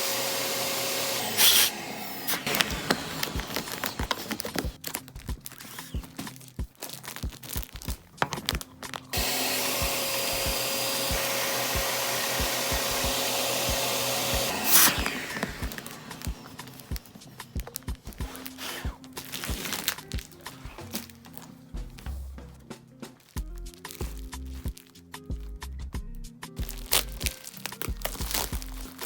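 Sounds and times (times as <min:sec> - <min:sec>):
electric blower motor rushing: 0:00.0 - 0:04.8, 0:08.2 - 0:21.0.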